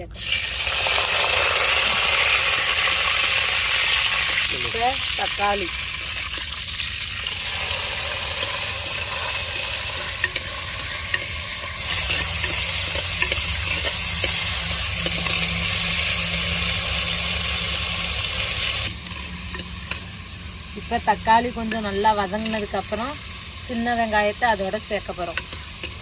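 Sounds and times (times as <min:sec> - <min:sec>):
tomatoes sizzling in oil: 0:00.0 - 0:26.0.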